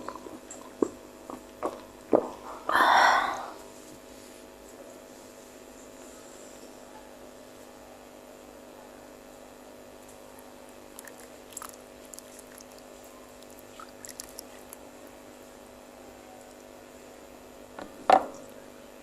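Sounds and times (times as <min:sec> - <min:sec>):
steady low hum: 0:00.0 - 0:19.0
chewing and mouth clicks: 0:11.0 - 0:14.9.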